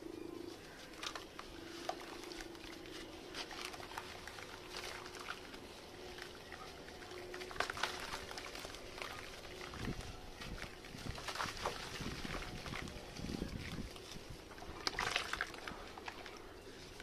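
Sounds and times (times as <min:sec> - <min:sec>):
faint low hum: 0:00.0 - 0:17.0
sand chunks crumbling and crunching: 0:07.1 - 0:13.3.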